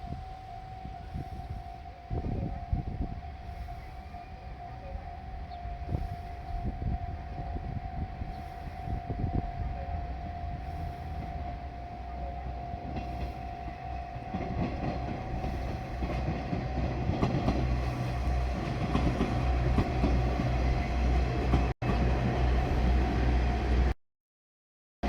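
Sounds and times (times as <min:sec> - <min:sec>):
crossing warning alarm ringing: 0:00.0 - 0:21.7
diesel train rumbling: 0:00.0 - 0:24.0
train wheels clattering: 0:12.6 - 0:22.1.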